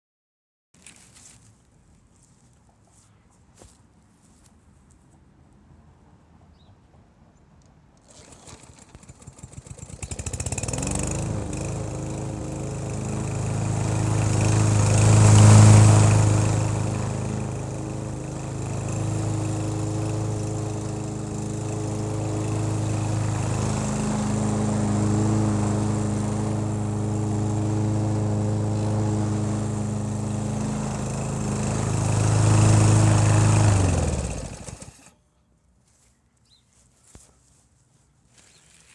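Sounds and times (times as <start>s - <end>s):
lawn mower engine running: 8.0s - 35.2s.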